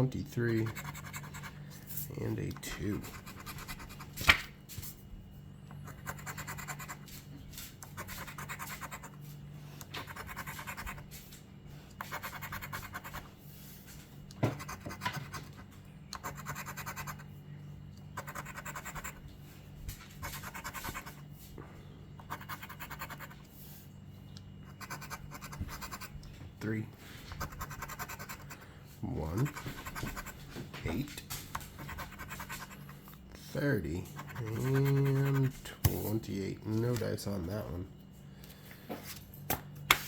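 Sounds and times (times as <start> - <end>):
lottery ticket being scratched: 0.4 - 4.4, 5.8 - 9.3, 10.0 - 11.3, 12.0 - 13.3, 16.2 - 17.2, 18.2 - 19.2, 20.2 - 21.2, 22.2 - 23.5, 24.6 - 26.1, 27.3 - 37.6.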